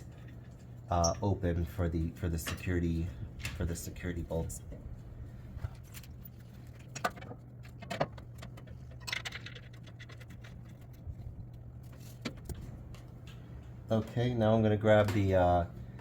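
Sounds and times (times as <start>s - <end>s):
low steady hum: 0.0s - 16.0s
metal bolts clinking and scraping: 5.8s - 11.0s.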